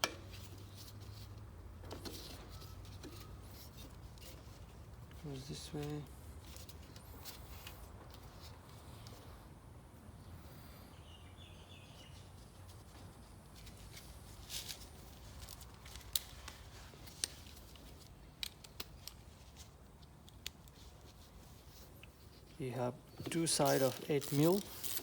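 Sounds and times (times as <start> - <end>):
small engine parts clicking and tapping: 15.4 - 19.3.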